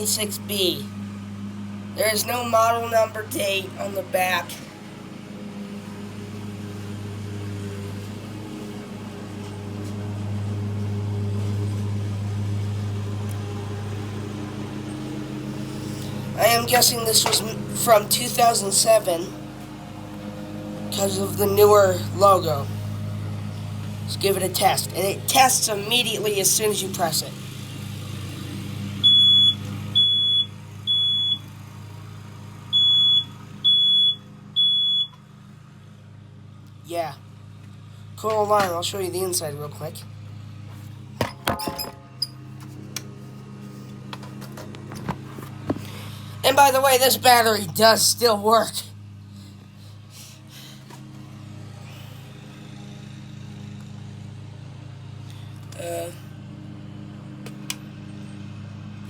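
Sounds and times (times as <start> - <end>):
low mechanical hum: 0.0 - 59.0
smoke alarm beeping: 29.0 - 31.4, 32.7 - 35.2.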